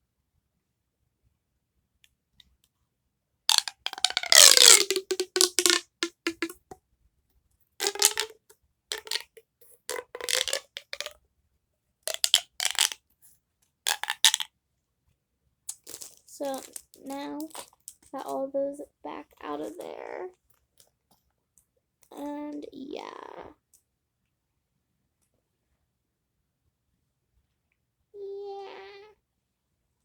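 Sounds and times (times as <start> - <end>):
plastic toys clicking and clattering: 3.5 - 6.8, 7.8 - 11.2, 12.1 - 13.0, 13.9 - 14.5, 15.7 - 18.4.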